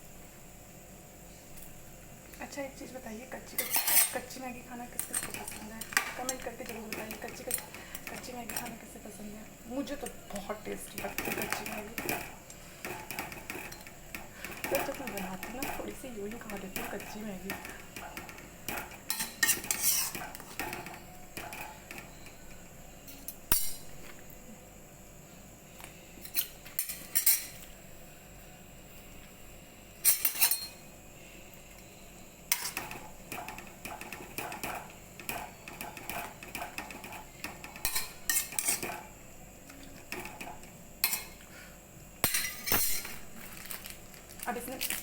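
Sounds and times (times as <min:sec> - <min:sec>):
spoon scraping and clinking a pan: 0:03.5 - 0:04.4, 0:05.0 - 0:08.8, 0:09.9 - 0:22.4, 0:23.1 - 0:24.2, 0:26.2 - 0:27.7, 0:30.0 - 0:30.8, 0:32.5 - 0:39.1, 0:40.0 - 0:41.4, 0:42.2 - 0:43.4.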